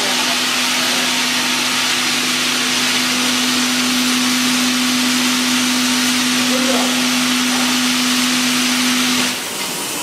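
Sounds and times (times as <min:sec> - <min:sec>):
machine humming: 0:00.0 - 0:10.0.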